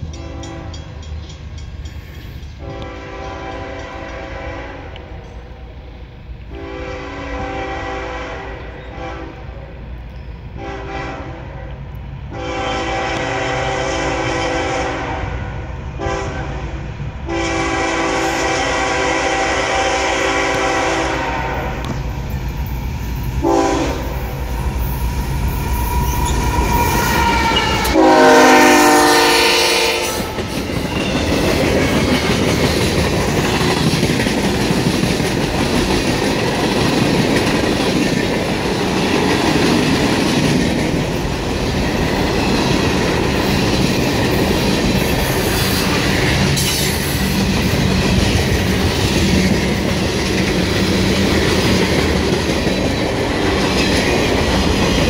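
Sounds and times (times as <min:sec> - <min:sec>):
train wheels rumbling on rails: 0:00.0 - 0:55.0
locomotive air horn: 0:00.2 - 0:00.8, 0:02.6 - 0:05.2, 0:06.5 - 0:09.5, 0:10.6 - 0:11.7, 0:12.3 - 0:21.9, 0:23.4 - 0:24.2, 0:25.9 - 0:30.5.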